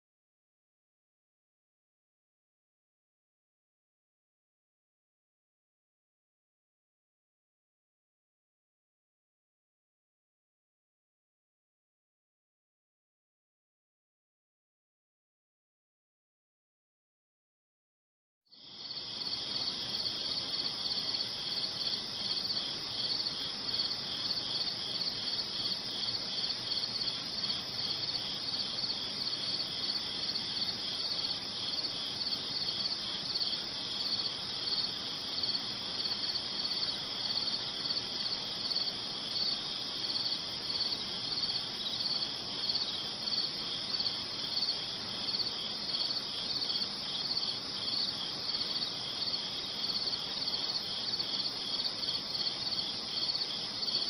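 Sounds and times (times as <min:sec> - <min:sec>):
crickets chirping: 0:18.6 - 0:54.0.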